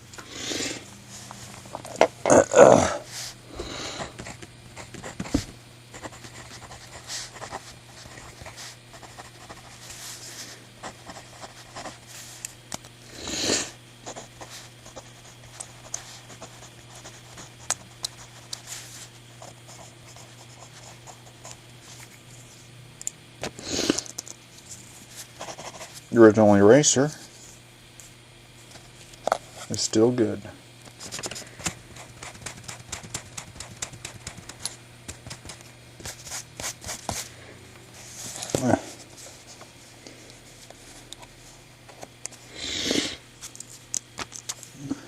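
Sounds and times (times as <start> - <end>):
pencil scratching on paper: 6.0 - 10.2, 10.8 - 12.0, 14.0 - 18.8, 25.4 - 26.0.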